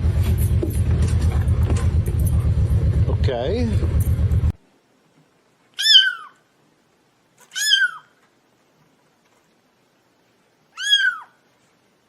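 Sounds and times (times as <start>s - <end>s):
cat meowing: 5.8s - 6.4s, 7.4s - 8.2s, 10.7s - 11.4s.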